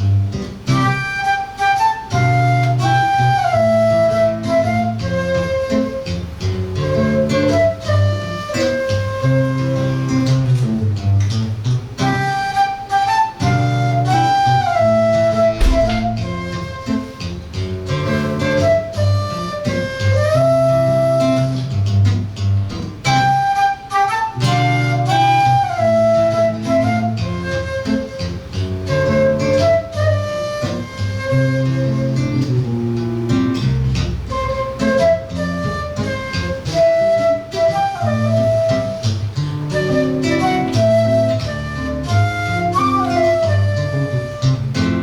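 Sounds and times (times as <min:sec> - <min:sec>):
flute melody: 0:00.0 - 0:45.0
plucked guitar chords: 0:15.5 - 0:19.3.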